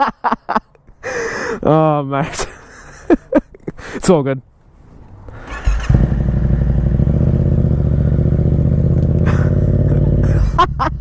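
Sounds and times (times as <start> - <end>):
motorcycle engine starting and idling: 5.3 - 11.0.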